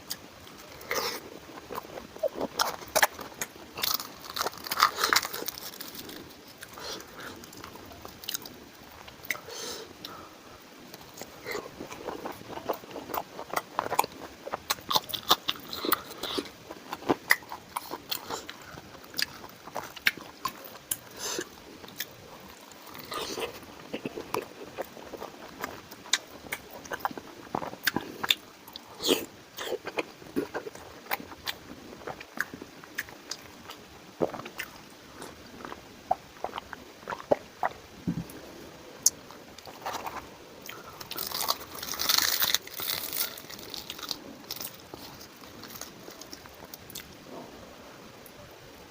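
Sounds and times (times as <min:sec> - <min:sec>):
man chewing food: 0:00.0 - 0:47.5.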